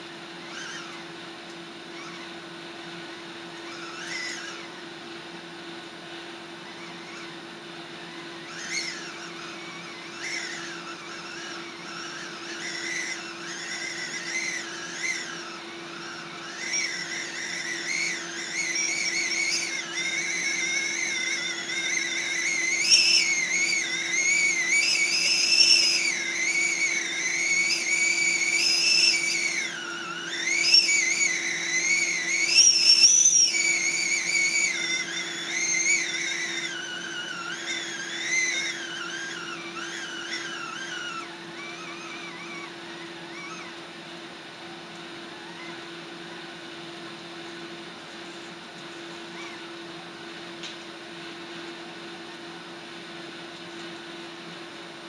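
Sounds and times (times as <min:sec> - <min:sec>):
steady low hum: 0:00.0 - 0:55.0
kettle steam whistle: 0:07.9 - 0:43.6.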